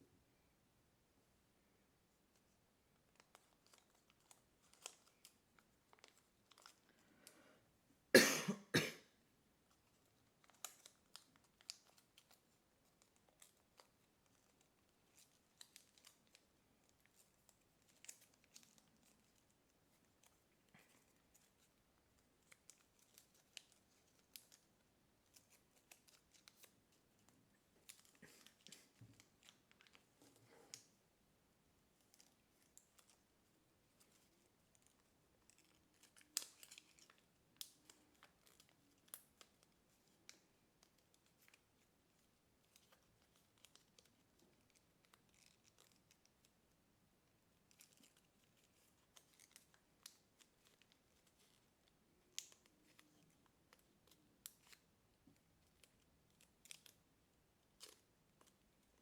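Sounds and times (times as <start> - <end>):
paper being folded and creased: 2.3 - 6.9, 9.6 - 30.9, 31.8 - 59.0.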